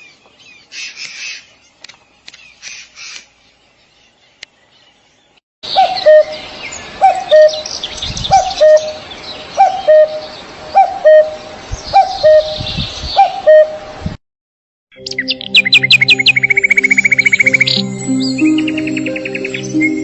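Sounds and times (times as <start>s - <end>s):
birds chirping and twittering: 0.0s - 13.8s, 14.9s - 20.0s
bird two-part call: 5.7s - 13.8s.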